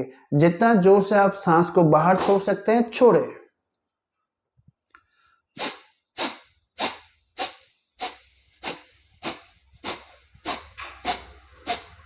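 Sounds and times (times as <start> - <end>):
sharp exhalations through nostril: 5.0 - 12.0.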